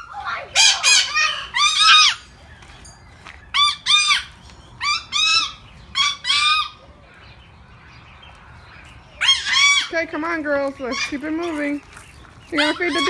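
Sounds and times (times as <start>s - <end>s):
parrot squawking: 0.0s - 2.3s, 3.5s - 6.8s, 9.2s - 10.0s, 10.8s - 11.6s, 12.5s - 13.0s.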